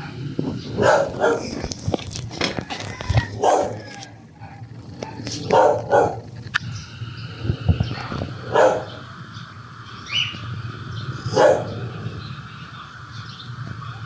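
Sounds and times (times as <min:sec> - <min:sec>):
dog barking: 0:00.8 - 0:01.6, 0:03.3 - 0:03.8, 0:04.4 - 0:06.3, 0:08.0 - 0:09.0, 0:11.3 - 0:11.8.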